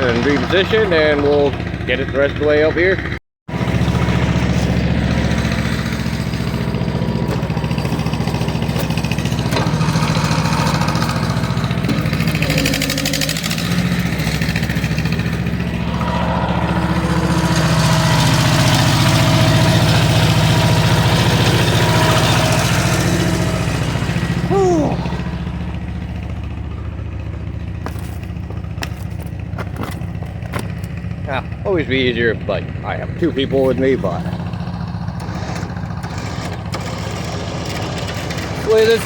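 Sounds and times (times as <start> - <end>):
engine running: 0.0 - 39.0
high squeal: 7.4 - 25.9.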